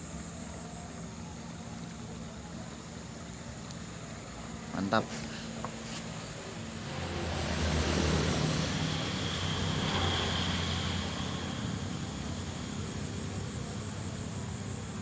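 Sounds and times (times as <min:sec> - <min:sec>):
faint high whine: 0:00.0 - 0:15.0
passing engine hum: 0:01.0 - 0:15.0.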